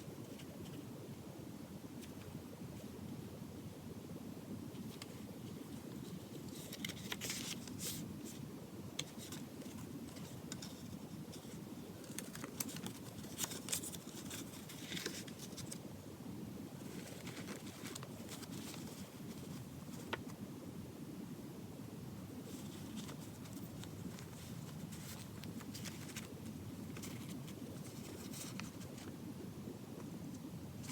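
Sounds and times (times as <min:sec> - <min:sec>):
low background hum: 0:00.0 - 0:30.9
packaging rustling: 0:22.5 - 0:29.1.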